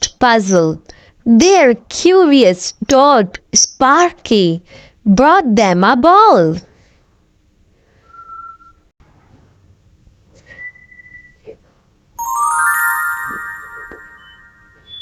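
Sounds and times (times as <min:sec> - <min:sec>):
bright chime sound effect: 0:12.2 - 0:14.9
thin whistle-like tone: 0:12.5 - 0:15.0.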